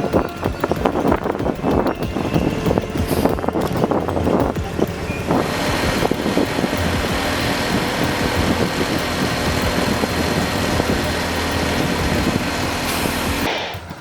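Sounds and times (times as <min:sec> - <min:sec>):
heavy vehicle engine running: 0:00.0 - 0:13.5.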